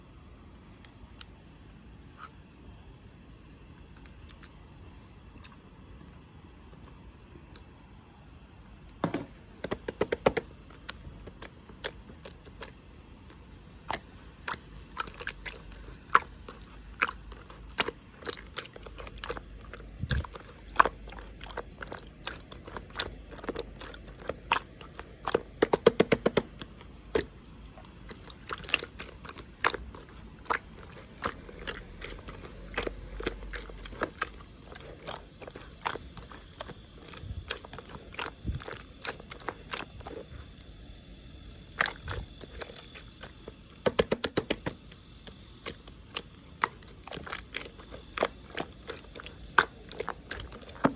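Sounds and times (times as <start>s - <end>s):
slime clicking and popping: 8.9s - 12.8s, 13.8s - 27.4s, 41.6s - 50.9s.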